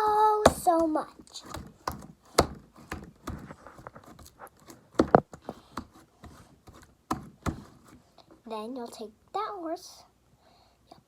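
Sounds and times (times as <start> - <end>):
slime slapping: 0.4 - 5.9.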